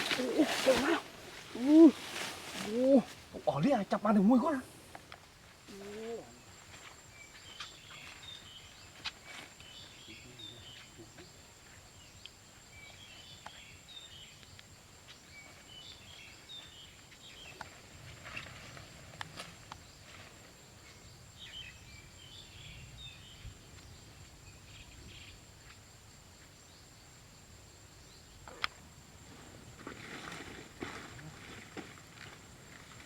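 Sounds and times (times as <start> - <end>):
high insect whine: 0.0 - 33.0
bird chirping: 6.2 - 19.2, 20.8 - 25.4.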